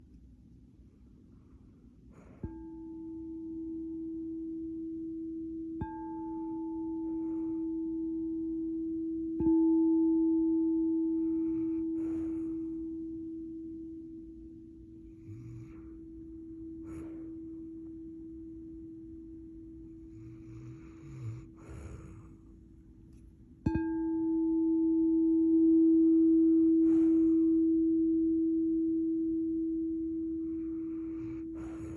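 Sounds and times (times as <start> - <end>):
dog snoring softly: 7.0 - 7.9, 11.1 - 12.8, 15.1 - 17.7, 19.9 - 22.6, 26.8 - 27.7, 30.4 - 31.9.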